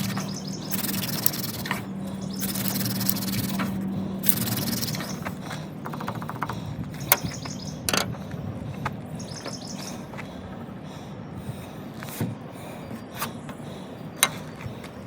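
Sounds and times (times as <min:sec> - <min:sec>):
sharp clicks: 0:00.0 - 0:08.1.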